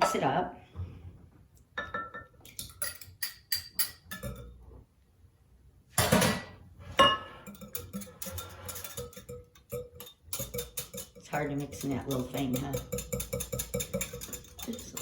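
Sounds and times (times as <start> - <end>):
utensil clinking against bowl: 7.0 - 15.0.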